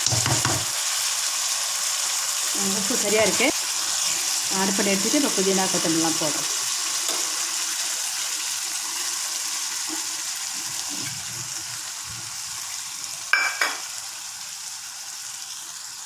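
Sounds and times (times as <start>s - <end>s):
food sizzling in a pan: 0.0s - 16.0s
spoon clinking on a pan: 13.3s - 13.9s.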